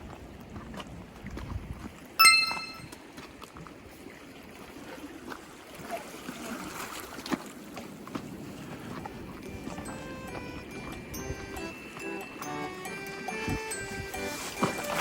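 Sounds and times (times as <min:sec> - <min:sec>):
water and wind at seashore: 0:00.0 - 0:15.0
bright ringing chime: 0:02.2 - 0:02.9.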